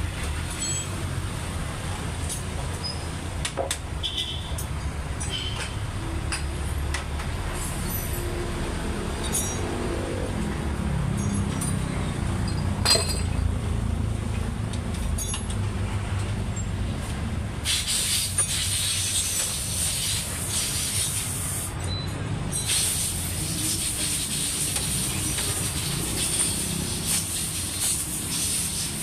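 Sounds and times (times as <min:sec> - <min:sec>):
metal tools clinking: 0:00.5 - 0:01.1, 0:04.6 - 0:05.8, 0:09.2 - 0:09.8, 0:11.1 - 0:13.5, 0:15.0 - 0:15.7
loud steady hiss: 0:17.6 - 0:21.8, 0:22.6 - 0:29.0.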